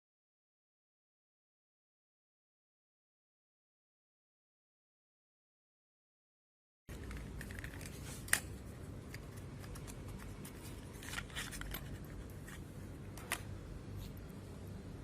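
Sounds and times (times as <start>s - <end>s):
low room hum: 6.9s - 15.0s.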